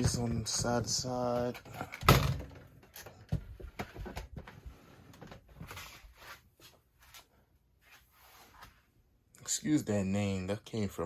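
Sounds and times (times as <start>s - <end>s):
plastic fans being handled: 0.0s - 7.3s.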